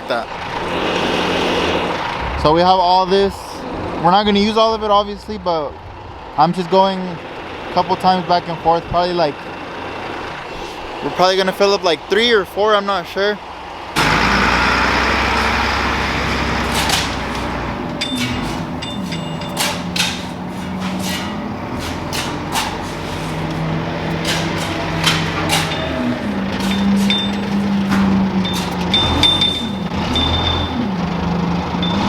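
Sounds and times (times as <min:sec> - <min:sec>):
diesel engine running: 0:00.0 - 0:32.0
metallic clanks and knocks: 0:15.2 - 0:31.2.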